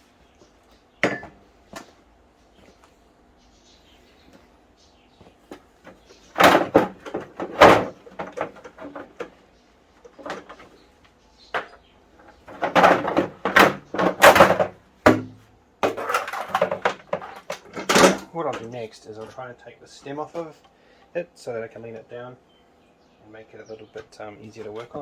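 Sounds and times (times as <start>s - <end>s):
exercise bike parts clattering: 5.5s - 9.4s, 11.6s - 19.4s.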